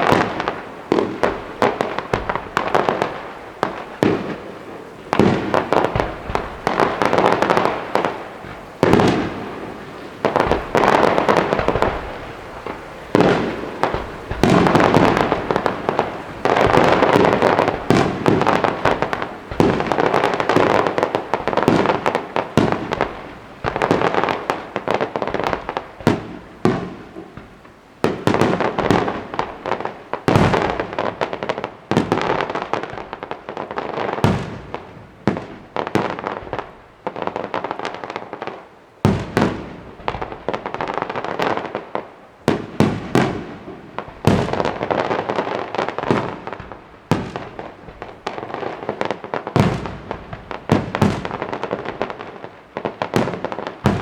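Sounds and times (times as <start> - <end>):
firework bangs: 0.0 - 54.0
fireworks crackling: 0.0 - 54.0.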